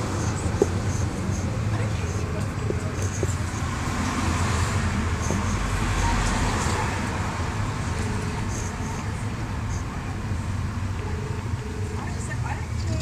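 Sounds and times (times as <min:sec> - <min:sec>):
street traffic: 0:00.0 - 0:13.0
vehicle passing by: 0:02.6 - 0:10.1.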